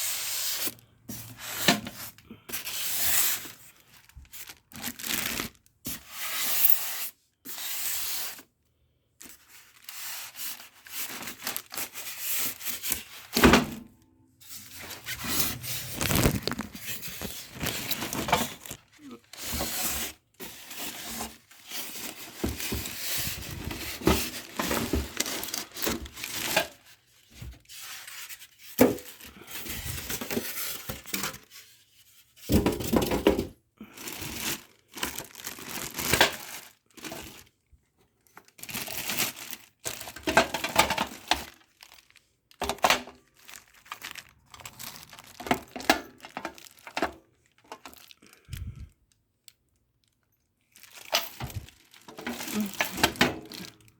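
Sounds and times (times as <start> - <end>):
packaging crinkling and tearing: 0.4 - 5.8, 9.2 - 13.4, 14.4 - 31.7, 33.8 - 48.9, 50.0 - 53.9.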